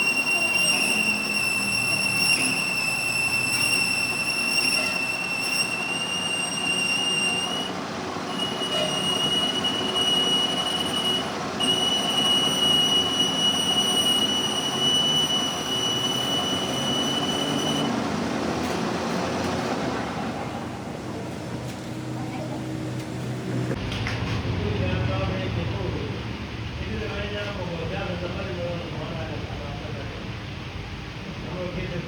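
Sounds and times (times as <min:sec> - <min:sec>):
lathe tool squealing against metal: 0:00.0 - 0:18.0
lathe machine running: 0:00.0 - 0:22.2.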